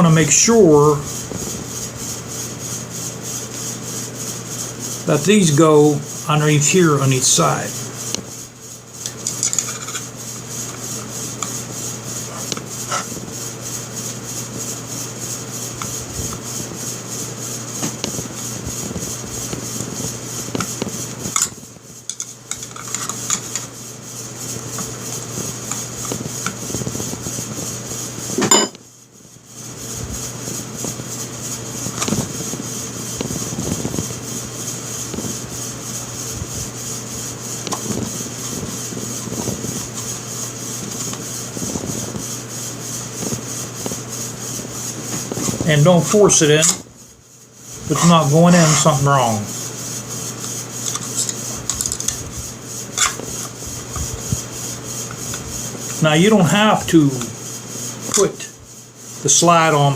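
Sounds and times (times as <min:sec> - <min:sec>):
steady background hum: 0:00.0 - 0:59.9.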